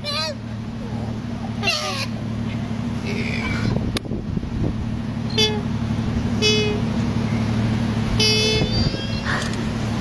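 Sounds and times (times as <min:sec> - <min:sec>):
koala high-pitched cries: 0:01.6 - 0:02.1, 0:08.6 - 0:09.6
koala droning call: 0:01.6 - 0:02.2, 0:05.3 - 0:05.7, 0:06.4 - 0:06.9.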